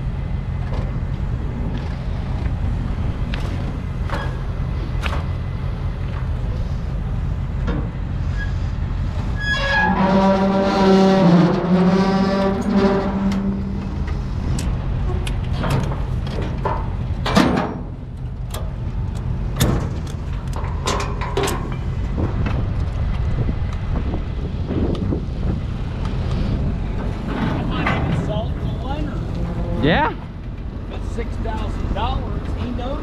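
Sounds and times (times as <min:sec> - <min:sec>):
moving vehicle rumble: 0:00.0 - 0:33.0
long horn blast: 0:09.7 - 0:14.4.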